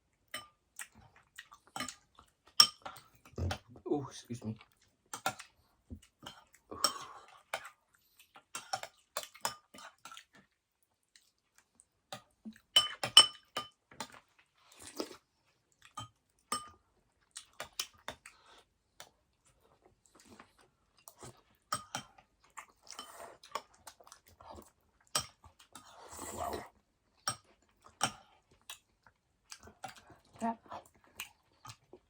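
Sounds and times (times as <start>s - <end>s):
chewing and mouth clicks: 0.7s - 3.7s, 7.3s - 12.7s, 17.2s - 32.0s
spoon clinking against bowl: 12.8s - 13.8s, 16.5s - 16.8s.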